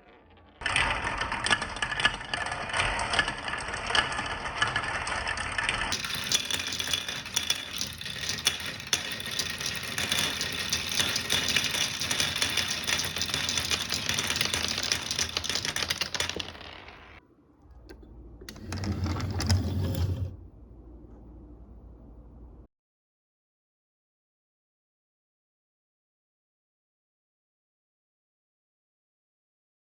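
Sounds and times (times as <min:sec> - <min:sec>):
marbles clattering down marble run: 0:00.0 - 0:17.2, 0:18.5 - 0:20.3
faint hum: 0:17.2 - 0:22.7.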